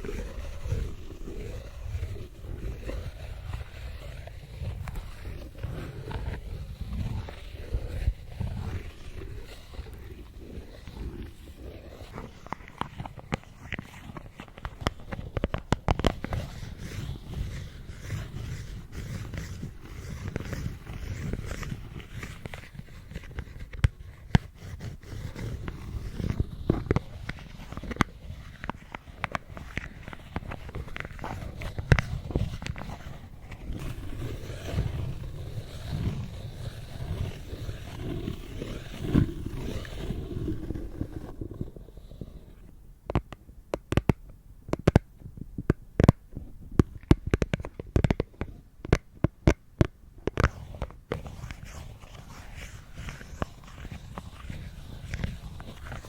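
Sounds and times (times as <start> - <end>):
plastic lids scraping: 8.1 - 56.0
plastic taps and clicks: 43.1 - 46.2, 46.8 - 50.5.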